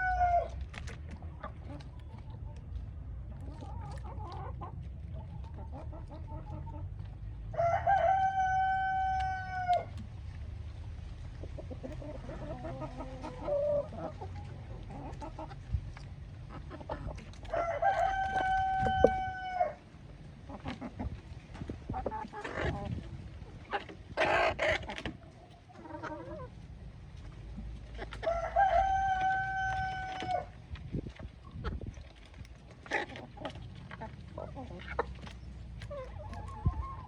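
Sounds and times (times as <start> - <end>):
hens clucking softly: 0.0 - 37.0
rooster crowing: 7.6 - 9.9, 17.5 - 19.8, 28.3 - 30.4.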